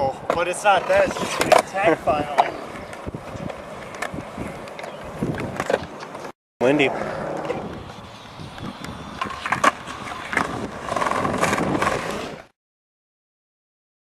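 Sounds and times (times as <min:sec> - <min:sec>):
skateboard wheels rolling on pavement: 0:00.0 - 0:12.5
skateboard clacks: 0:07.3 - 0:12.2.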